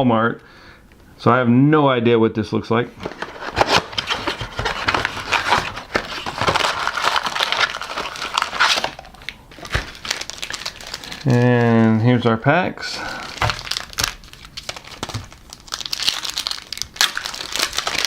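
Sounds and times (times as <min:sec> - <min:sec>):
plastic wrap crinkling: 0:03.0 - 0:12.0, 0:13.0 - 0:18.0
cardboard tearing: 0:03.1 - 0:11.5, 0:13.4 - 0:18.0.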